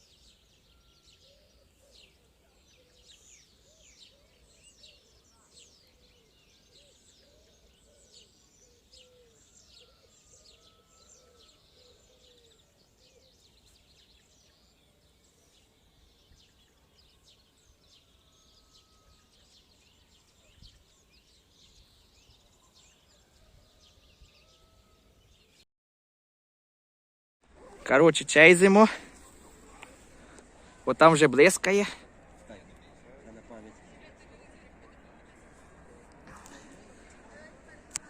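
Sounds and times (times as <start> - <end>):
low warbling bird calls: 0.0 - 25.6.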